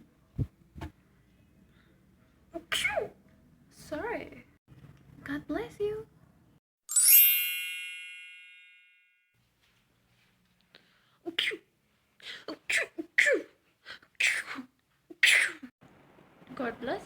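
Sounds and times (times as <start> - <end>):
bright chime ringing: 6.9 - 9.2.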